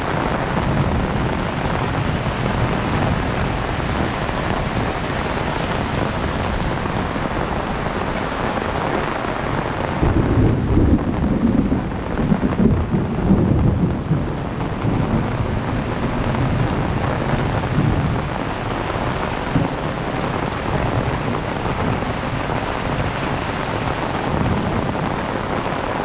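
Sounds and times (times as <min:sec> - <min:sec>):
heavy rain: 0:00.0 - 0:26.0
low rumble of thunder: 0:09.2 - 0:26.0.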